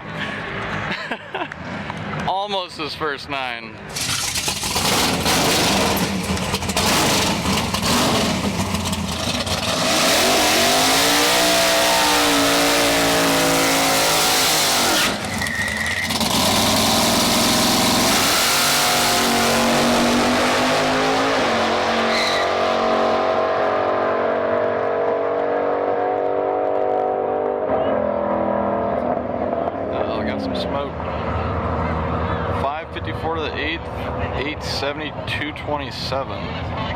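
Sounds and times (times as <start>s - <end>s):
race car engine accelerating: 3.9s - 32.4s.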